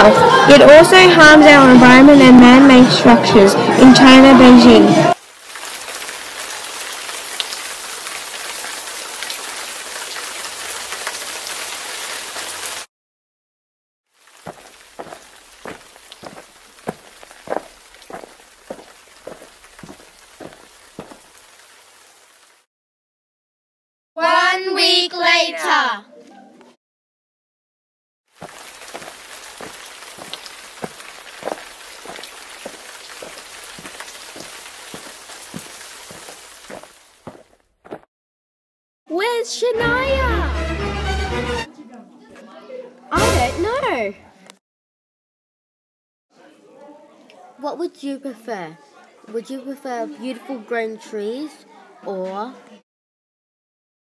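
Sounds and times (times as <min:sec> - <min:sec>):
steady rain falling: 0:00.0 - 0:12.9, 0:14.1 - 0:22.7, 0:28.3 - 0:38.0.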